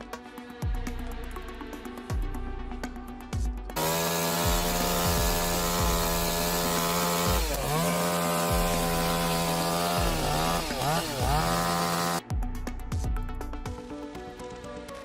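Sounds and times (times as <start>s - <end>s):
chainsaw engine revving: 3.8s - 12.2s.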